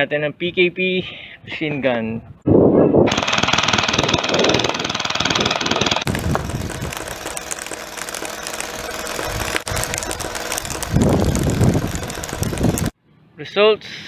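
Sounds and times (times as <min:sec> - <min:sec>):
airsoft machine gun firing: 0:03.1 - 0:12.9.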